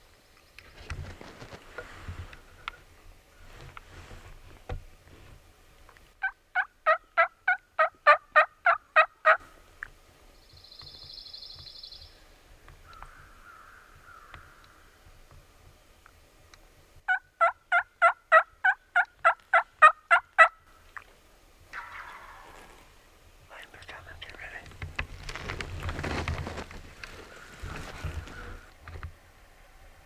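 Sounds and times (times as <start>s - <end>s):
wild turkey yelps: 6.2s - 9.4s, 17.1s - 20.6s, 21.7s - 23.0s.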